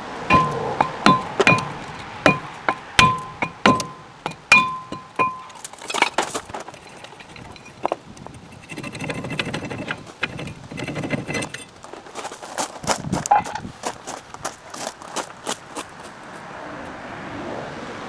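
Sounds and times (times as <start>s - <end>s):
metal struck ringing: 0.3s - 5.6s
metal clanks: 0.3s - 12.6s
metal tools clinking: 0.3s - 12.7s.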